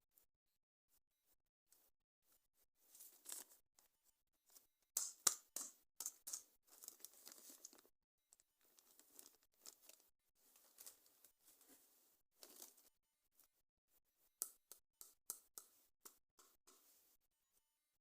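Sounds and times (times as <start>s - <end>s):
packaging rustling and tearing: 6.7s - 7.9s.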